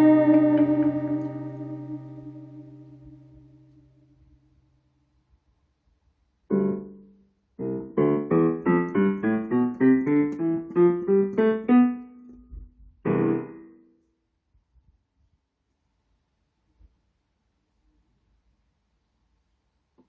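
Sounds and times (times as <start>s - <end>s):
digital piano playing: 0.0s - 3.7s, 6.5s - 7.0s, 7.6s - 12.3s, 13.1s - 13.8s.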